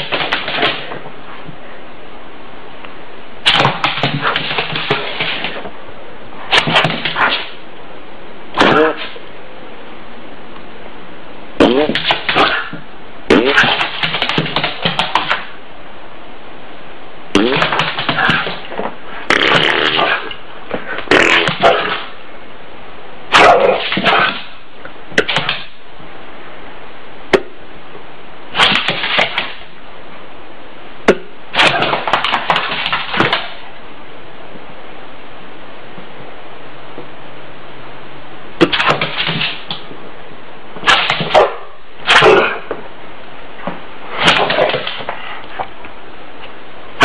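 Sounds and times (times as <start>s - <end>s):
fart sound effects: 8.6s - 9.1s, 11.6s - 12.6s, 13.3s - 13.8s, 17.4s - 18.4s, 19.3s - 20.4s, 21.1s - 22.0s.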